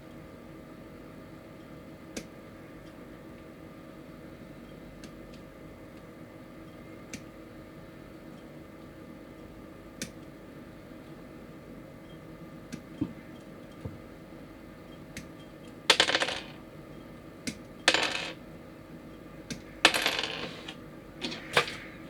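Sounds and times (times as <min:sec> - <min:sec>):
plastic parts clattering: 0:19.9 - 0:22.0.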